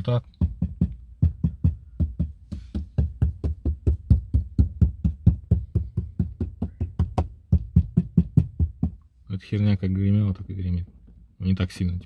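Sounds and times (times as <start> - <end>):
rapid knocking on plastic panel: 0.3 - 9.0.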